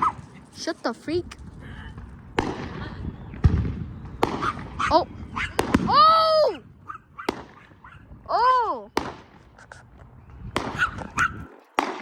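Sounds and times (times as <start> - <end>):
fireworks bangs: 1.9 - 6.4, 8.9 - 9.6, 10.5 - 12.0.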